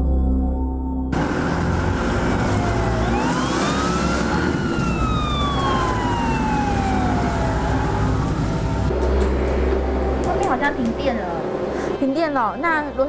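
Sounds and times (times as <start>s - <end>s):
traffic noise: 1.1s - 13.0s
ambulance siren wailing: 1.2s - 9.0s.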